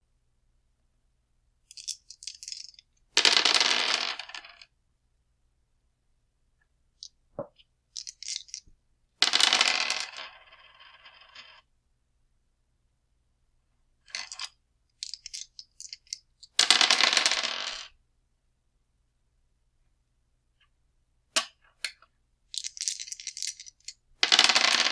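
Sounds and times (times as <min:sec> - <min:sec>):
dice rattling when shaken: 0:01.7 - 0:04.6, 0:08.0 - 0:10.6, 0:14.1 - 0:17.9, 0:22.5 - 0:24.9
dice clattering on hard surface: 0:01.7 - 0:04.7, 0:07.4 - 0:11.6, 0:14.1 - 0:17.9, 0:21.4 - 0:24.9.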